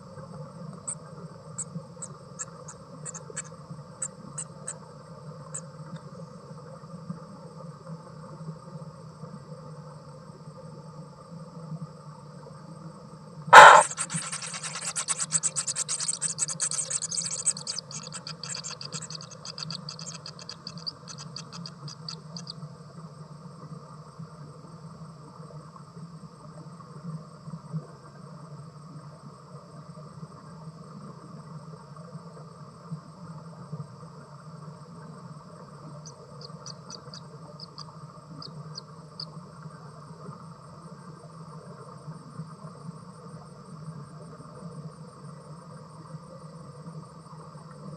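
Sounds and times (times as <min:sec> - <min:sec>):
insects ticking trill: 0:00.0 - 0:30.6, 0:31.7 - 0:47.9
steady background drone: 0:13.5 - 0:22.5.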